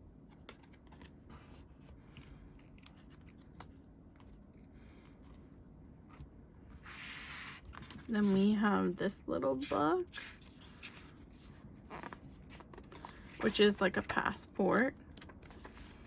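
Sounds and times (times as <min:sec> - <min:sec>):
air conditioner buzz: 0:00.0 - 0:16.0
paper and card handled: 0:00.3 - 0:05.3, 0:09.5 - 0:16.0.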